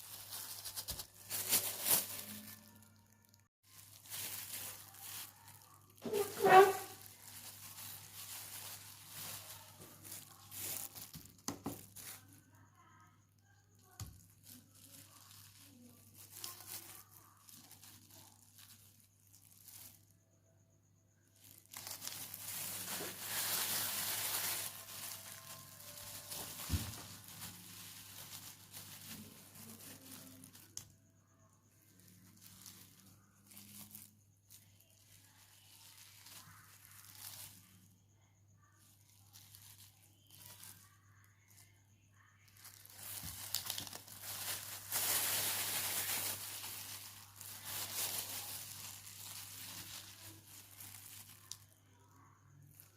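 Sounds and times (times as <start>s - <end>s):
material crinkling and rustling: 0.0s - 13.0s, 13.7s - 20.3s, 21.2s - 31.0s, 31.7s - 38.0s, 38.8s - 51.8s, 52.4s - 52.9s.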